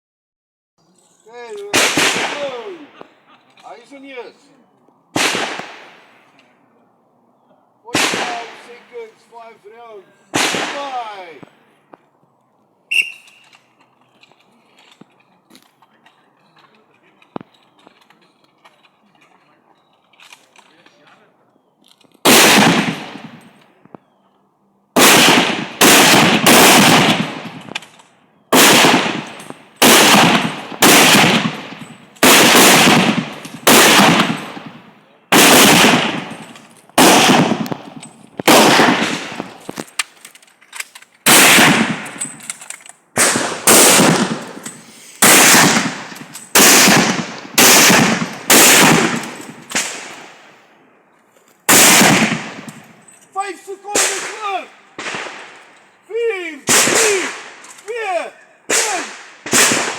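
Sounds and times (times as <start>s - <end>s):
gunshots with echo: 1.7s - 3.0s, 5.2s - 6.1s, 7.9s - 9.0s, 10.3s - 11.3s, 22.3s - 23.4s, 25.0s - 27.7s, 28.5s - 39.6s, 41.3s - 42.2s, 43.2s - 50.5s, 51.7s - 52.8s, 53.9s - 55.6s, 56.6s - 57.6s, 58.7s - 59.9s.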